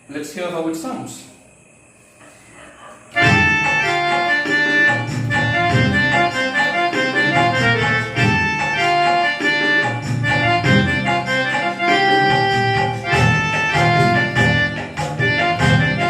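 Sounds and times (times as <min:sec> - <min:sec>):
keyboard folk-dance accompaniment: 0:03.1 - 0:16.0
held keyboard melody notes: 0:03.2 - 0:16.0.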